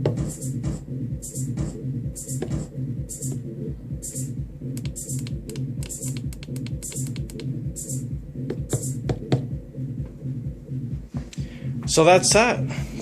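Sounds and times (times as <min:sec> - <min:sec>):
hissy hi-hat: 0:00.0 - 0:09.0
clicky percussion hits: 0:00.0 - 0:10.2
bass-heavy electronic drum loop: 0:00.0 - 0:13.0.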